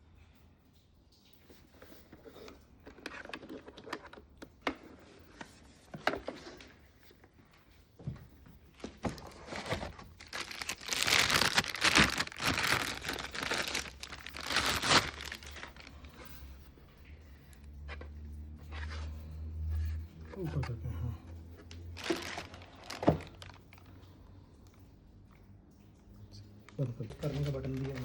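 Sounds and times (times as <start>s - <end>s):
plastic packaging crinkling: 9.0s - 16.4s, 21.9s - 23.9s, 27.1s - 28.0s.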